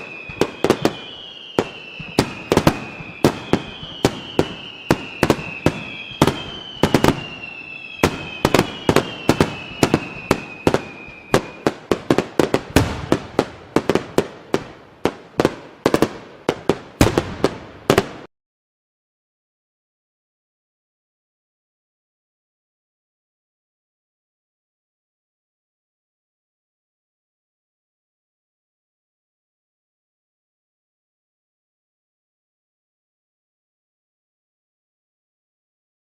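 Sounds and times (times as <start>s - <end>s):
firework whistles: 0.0s - 18.3s
fireworks bangs: 0.0s - 18.3s.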